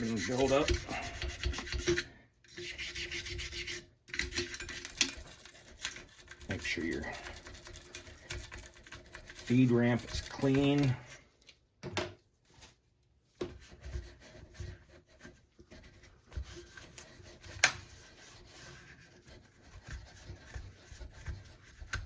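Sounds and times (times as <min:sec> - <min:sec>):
light rubbing: 0:00.0 - 0:11.2.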